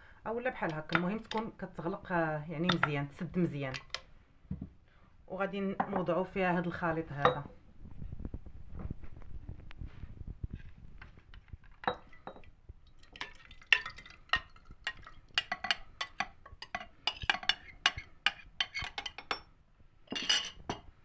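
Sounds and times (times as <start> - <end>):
spoon clinking against a jar: 11.8 - 12.5, 13.1 - 19.5, 20.1 - 20.8.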